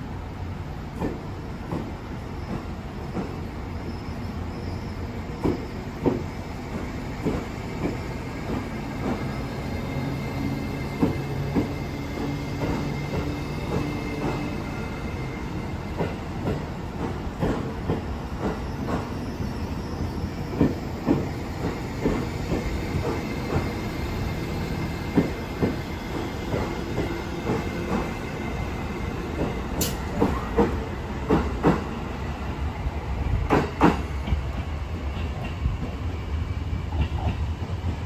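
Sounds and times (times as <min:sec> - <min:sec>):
train rumble: 0:00.0 - 0:38.0
train wheels clacking: 0:05.3 - 0:32.1, 0:33.2 - 0:36.1.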